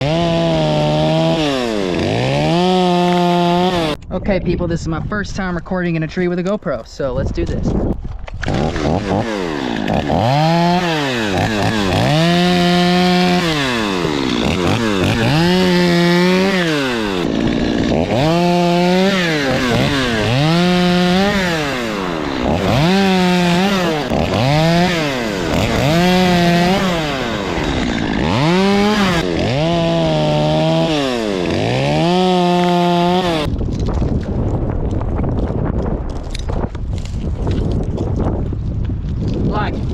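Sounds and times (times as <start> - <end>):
chainsaw revving and idling: 0.0 - 4.0, 8.4 - 33.5.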